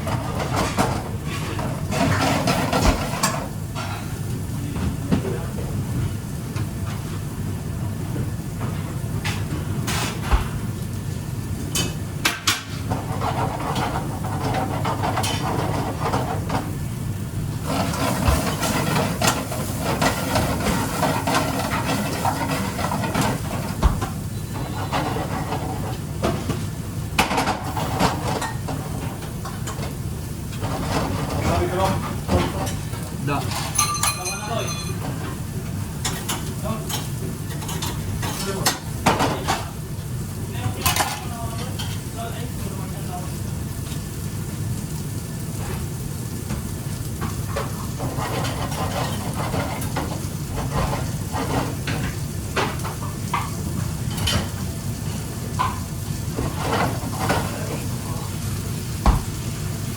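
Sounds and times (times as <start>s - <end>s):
dishes and pans clinking: 0.0s - 4.2s, 8.6s - 10.6s, 11.7s - 16.7s, 17.7s - 30.0s, 30.6s - 39.7s, 40.6s - 42.1s, 47.2s - 58.2s.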